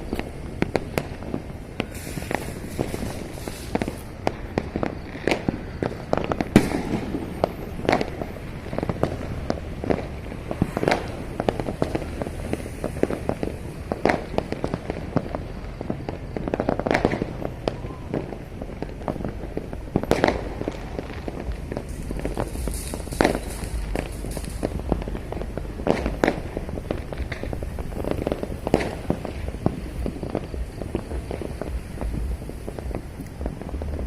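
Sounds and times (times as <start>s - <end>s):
fireworks popping and crackling: 0.0s - 34.0s
loud firework bangs: 0.0s - 34.0s
low rumble: 19.8s - 34.0s.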